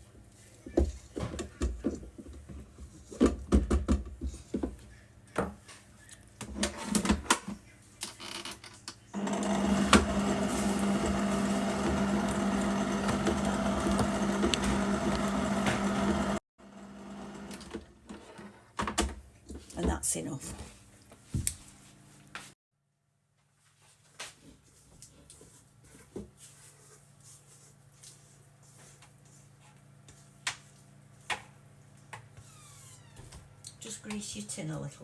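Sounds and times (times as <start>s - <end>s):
electric mixer beating batter: 9.2s - 17.8s
spatula scraping mixing bowl: 9.6s - 16.4s.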